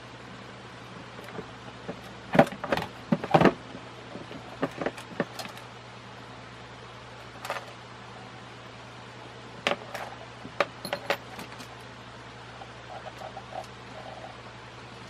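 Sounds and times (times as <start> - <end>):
steady low hum: 0.0 - 15.0
hardware clicks and clatters: 4.2 - 5.6, 9.7 - 11.8.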